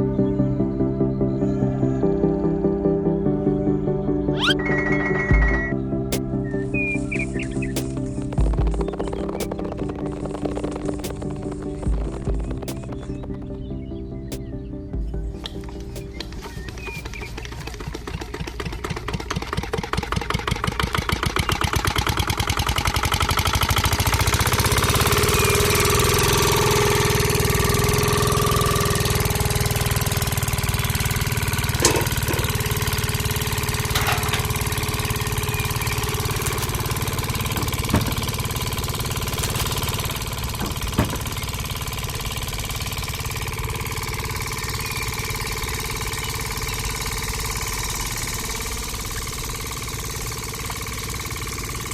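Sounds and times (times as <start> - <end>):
small engine starting and running: 4.4 - 14.8, 15.4 - 51.9
sharp clicks: 7.2 - 13.6.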